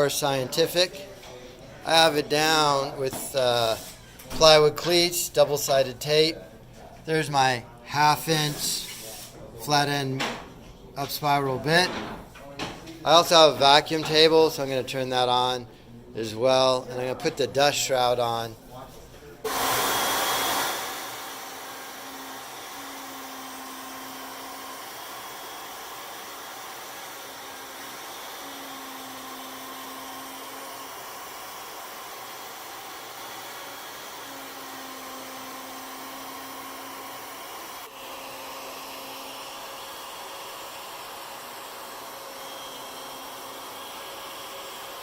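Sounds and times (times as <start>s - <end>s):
router steady rushing noise: 19.4s - 45.0s.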